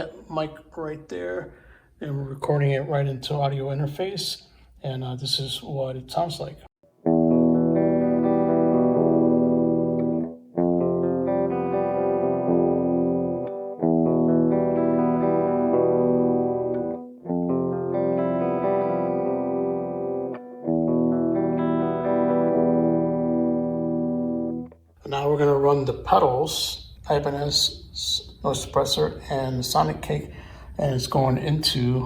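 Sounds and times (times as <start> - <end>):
electric guitar chords ringing: 6.8 - 24.9.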